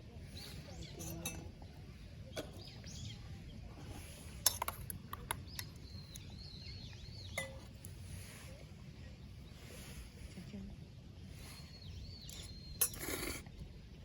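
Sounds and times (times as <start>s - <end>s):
low steady outdoor background: 0.0s - 14.0s
small birds chirping: 0.0s - 14.0s.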